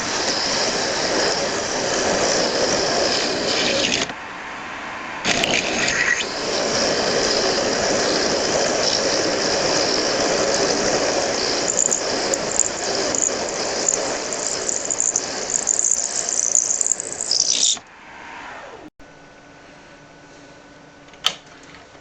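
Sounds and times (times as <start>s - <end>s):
metal lathe cutting aluminum: 0.0s - 4.2s, 5.2s - 17.8s
high tool squeaks: 7.2s - 17.8s.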